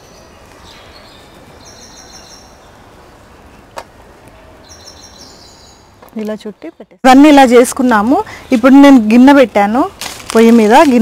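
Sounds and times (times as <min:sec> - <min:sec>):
small bird chirping: 0:00.0 - 0:02.8, 0:04.6 - 0:07.0
outdoor background noise: 0:00.0 - 0:11.0.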